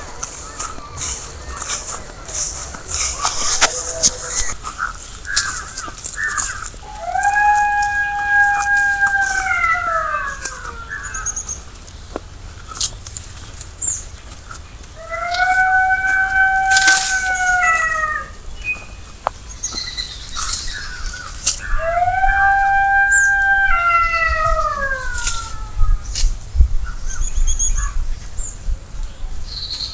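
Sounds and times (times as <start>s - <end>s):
dog howling: 0.0s - 4.6s, 6.8s - 11.3s, 15.0s - 18.4s, 21.6s - 25.9s.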